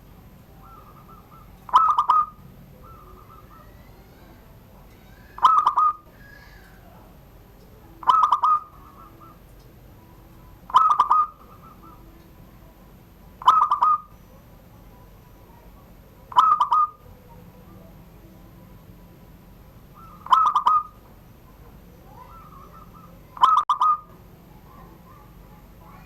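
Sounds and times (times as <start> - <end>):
dove cooing: 0.5 - 7.1, 7.9 - 9.6, 10.2 - 12.3, 13.4 - 14.2, 16.2 - 17.8, 19.8 - 26.0.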